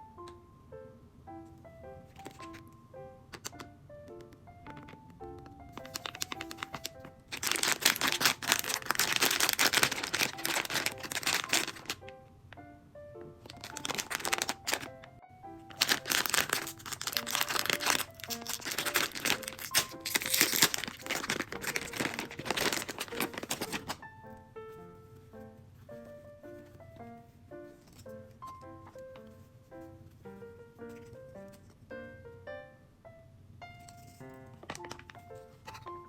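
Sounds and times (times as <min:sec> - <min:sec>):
light background music: 0:00.0 - 0:36.0
plastic packaging crinkling and tearing: 0:02.2 - 0:02.6, 0:05.8 - 0:12.1, 0:13.4 - 0:24.0, 0:34.0 - 0:35.8.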